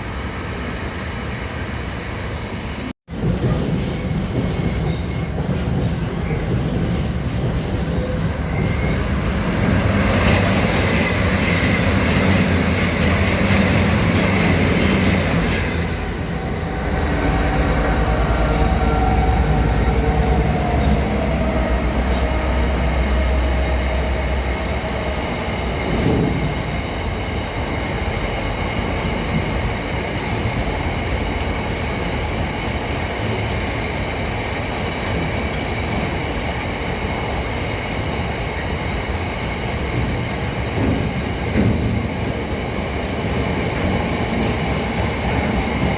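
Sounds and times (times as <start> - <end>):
train rail rumble: 0.0 - 45.9
high wheel squeals: 7.7 - 24.8
low engine drone: 15.8 - 25.8.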